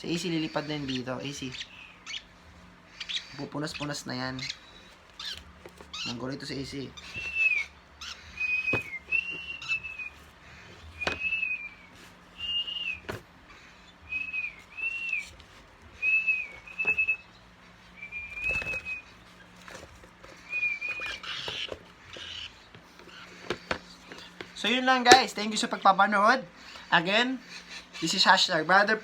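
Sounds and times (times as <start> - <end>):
parrot whistling: 6.8 - 10.2, 10.8 - 13.2, 14.0 - 15.3, 15.9 - 19.2, 20.4 - 22.5.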